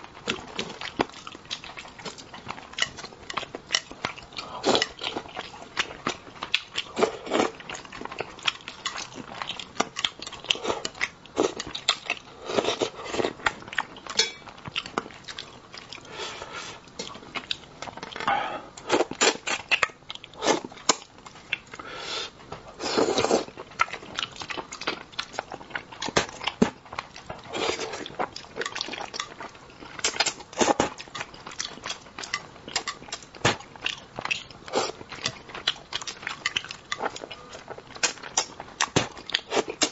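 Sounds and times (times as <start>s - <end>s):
person chewing and eating: 0.0s - 39.9s.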